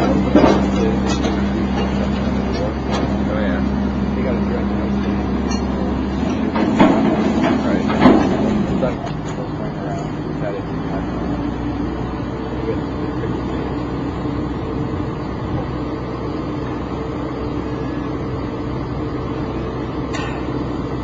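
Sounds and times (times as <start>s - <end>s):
pile-driving machinery engine drone: 0.0s - 21.0s
hum of held tones: 9.6s - 21.0s.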